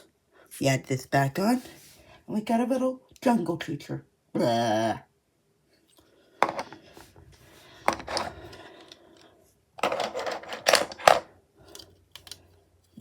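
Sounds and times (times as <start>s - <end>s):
plastic bricks clicking and clattering: 9.8s - 12.5s.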